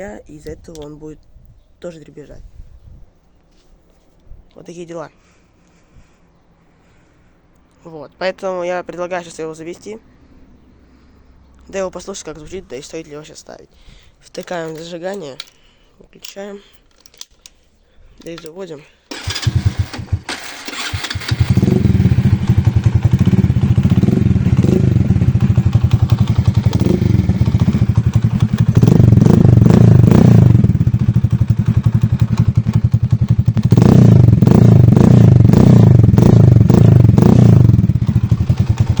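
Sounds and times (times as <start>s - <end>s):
moped engine idling and revving: 19.1s - 39.0s.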